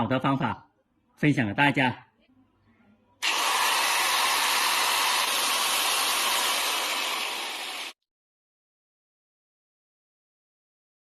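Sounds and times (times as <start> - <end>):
electric drill whirring: 3.2 - 8.0.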